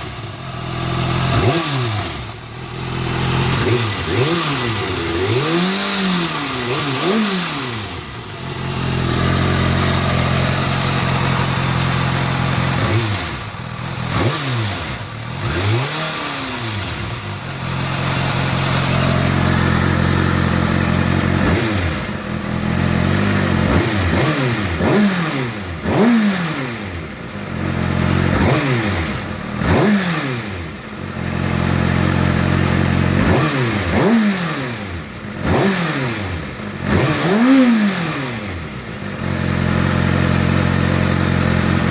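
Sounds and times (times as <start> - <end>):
engine ticking: 0.0 - 15.9
motorcycle engine idling and revving: 0.0 - 41.9.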